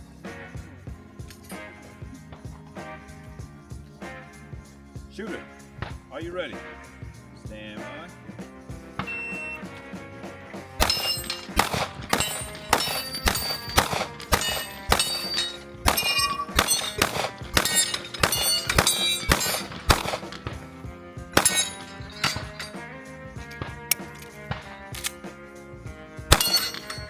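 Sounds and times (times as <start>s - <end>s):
music playing: 0.0s - 27.0s
steel targets ringing: 9.0s - 9.6s, 10.8s - 20.8s, 21.4s - 22.9s, 26.3s - 27.0s
gunshots: 10.8s - 25.3s, 26.3s - 27.0s.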